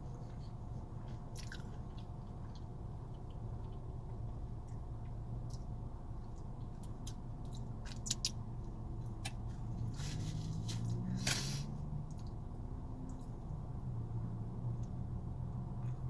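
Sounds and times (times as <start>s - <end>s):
low steady hum: 0.0s - 16.0s
wet chewing and lip smacks: 0.3s - 10.0s, 12.0s - 12.4s.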